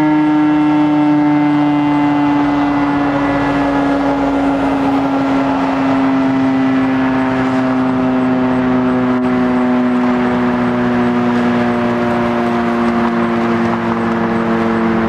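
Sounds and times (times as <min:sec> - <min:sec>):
warning siren wailing: 0:00.0 - 0:15.0.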